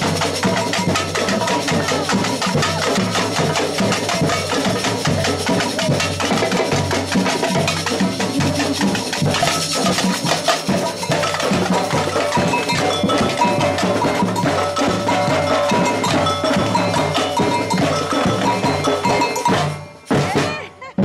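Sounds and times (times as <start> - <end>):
percussion band playing: 0.0 - 21.0
ringing bell-like strikes: 9.4 - 20.3.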